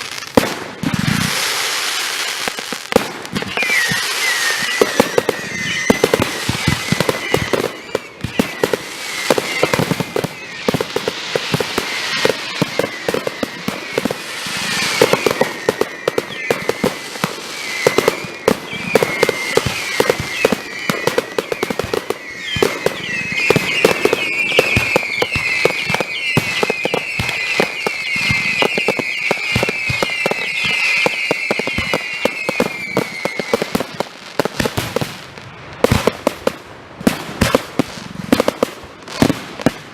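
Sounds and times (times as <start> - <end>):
fireworks bangs and crackling: 0.0 - 39.9
high whistling fireworks: 0.0 - 39.9.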